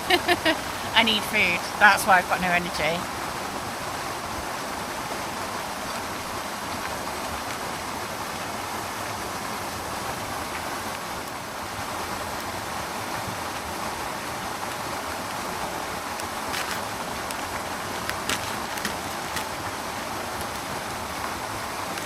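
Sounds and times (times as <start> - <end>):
small waterfall rushing: 0.0 - 22.0.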